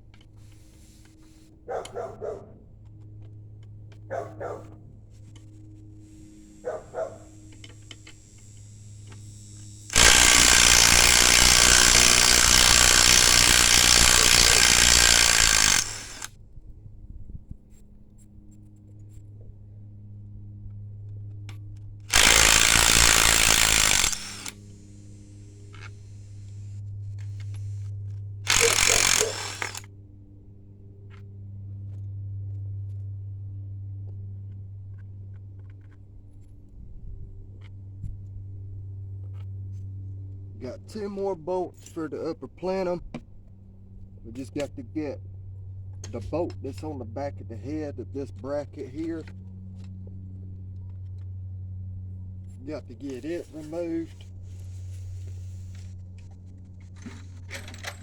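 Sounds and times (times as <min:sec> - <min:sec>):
impact wrench running: 0:09.8 - 0:16.3, 0:22.1 - 0:24.6, 0:28.5 - 0:29.9.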